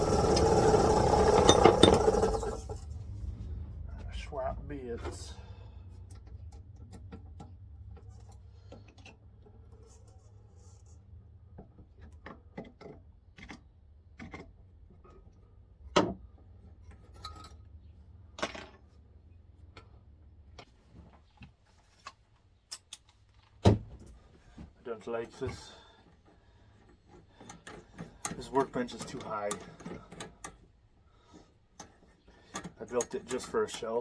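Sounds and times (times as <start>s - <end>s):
hand tools and metal parts clinking: 0.0s - 2.8s, 16.8s - 17.8s, 25.0s - 30.7s, 31.3s - 34.0s
low steady hum: 0.0s - 8.7s.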